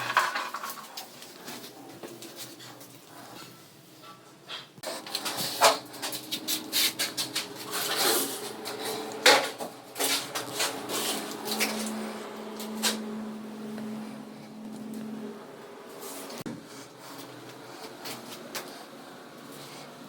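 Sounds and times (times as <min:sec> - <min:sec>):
hard objects clattering: 0:00.0 - 0:15.1
steady low hum: 0:00.0 - 0:20.0.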